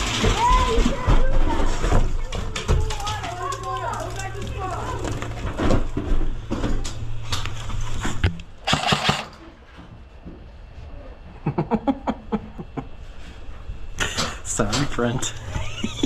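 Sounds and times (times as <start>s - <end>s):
noisy burst: 6.6s - 9.4s.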